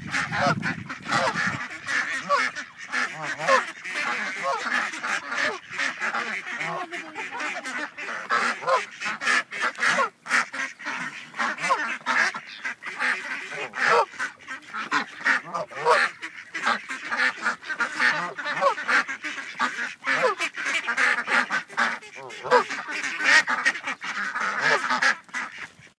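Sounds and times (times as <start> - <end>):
flock of ducks quacking: 0.0 - 25.9.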